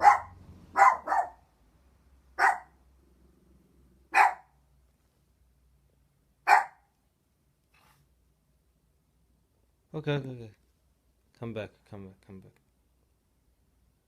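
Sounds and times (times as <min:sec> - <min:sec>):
dog barking: 0:00.0 - 0:01.4, 0:02.4 - 0:02.8, 0:04.1 - 0:04.6, 0:06.4 - 0:06.9.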